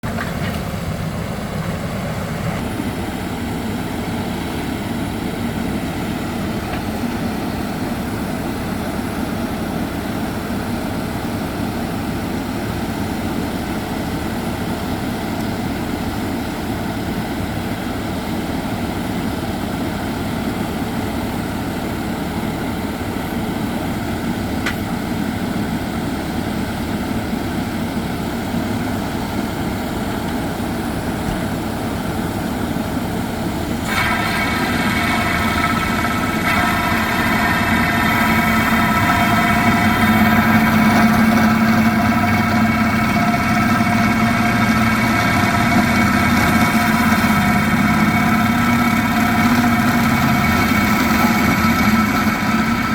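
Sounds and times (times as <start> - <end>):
rock drill boring into concrete: 33.7 - 52.9.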